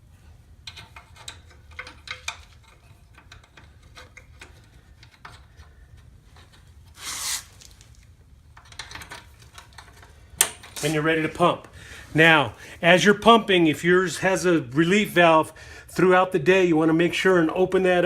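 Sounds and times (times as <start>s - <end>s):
metal clamp parts clicking: 0.6s - 6.6s
short metal scrape: 6.9s - 7.7s.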